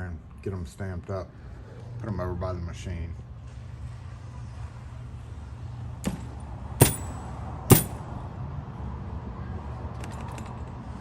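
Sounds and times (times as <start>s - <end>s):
low shop hum: 0.0s - 9.8s
metal keys clicking: 6.1s - 8.0s.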